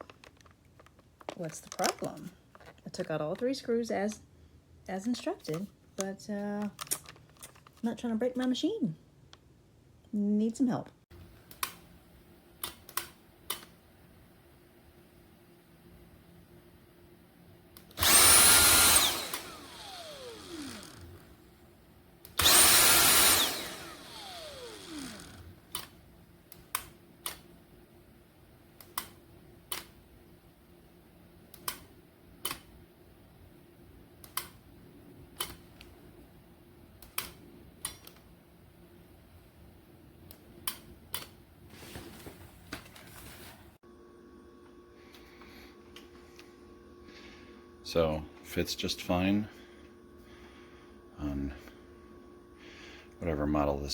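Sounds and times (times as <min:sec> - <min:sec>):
vacuum motor whine: 0:17.8 - 0:21.5, 0:22.3 - 0:25.7.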